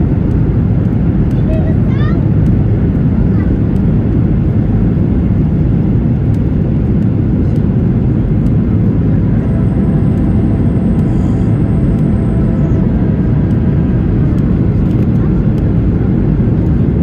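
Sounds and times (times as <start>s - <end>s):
jet airliner rumble: 0.0s - 17.0s
faint high-pitched whine: 9.1s - 14.1s.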